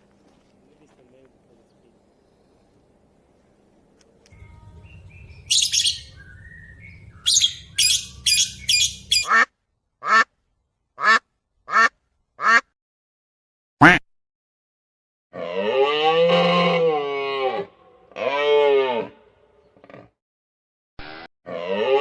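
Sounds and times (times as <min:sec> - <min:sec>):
low hum: 0:02.1 - 0:09.3
harsh high bird calls: 0:04.4 - 0:09.4.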